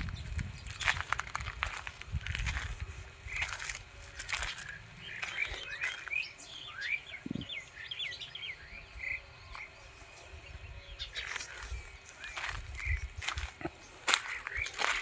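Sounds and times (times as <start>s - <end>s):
footsteps on forest floor: 0.0s - 7.0s, 11.0s - 15.0s
birds chirping: 0.0s - 15.0s.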